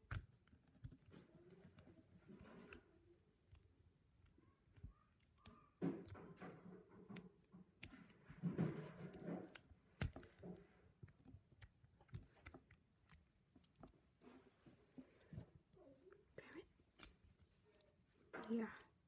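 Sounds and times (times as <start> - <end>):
soft handling rustles: 6.2 - 19.0
lock pick clicking and scraping: 7.0 - 14.0.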